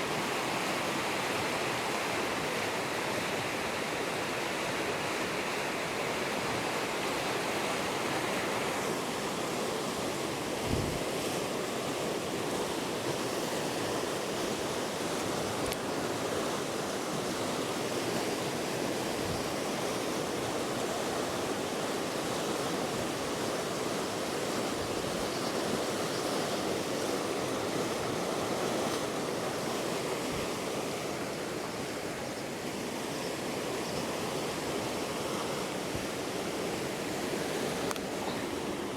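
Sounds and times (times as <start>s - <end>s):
waterfall rushing: 19.7s - 38.9s.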